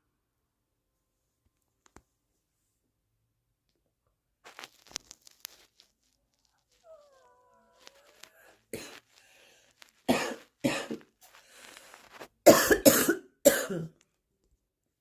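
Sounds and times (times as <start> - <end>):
woman coughing: 10.1 - 11.0, 12.5 - 14.0.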